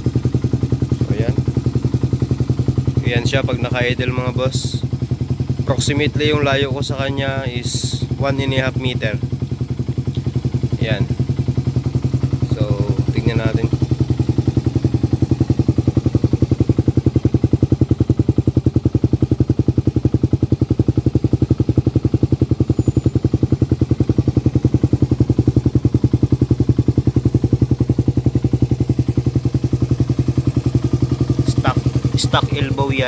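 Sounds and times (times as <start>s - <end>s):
motorcycle engine idling: 0.0s - 33.0s.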